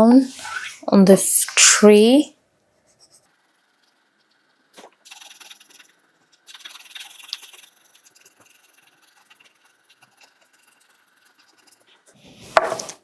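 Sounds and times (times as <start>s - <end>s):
pen scratching on paper: 2.9s - 13.0s.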